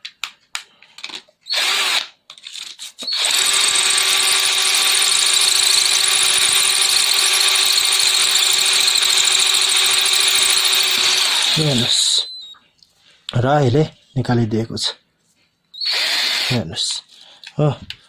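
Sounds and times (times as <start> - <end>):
cordless drill drilling into brick: 1.5 - 2.1, 3.0 - 12.5, 15.8 - 16.6.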